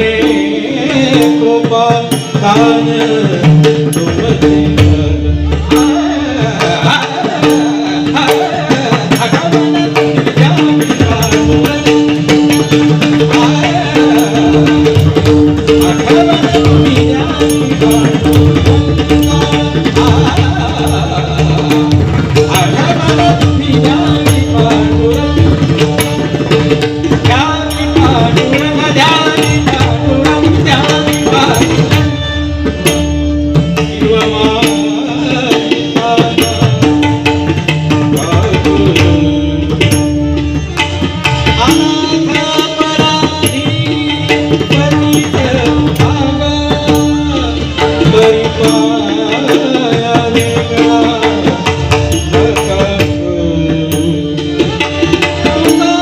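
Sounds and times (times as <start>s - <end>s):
devotional music: 0.0s - 56.0s
tabla strokes: 0.0s - 56.0s.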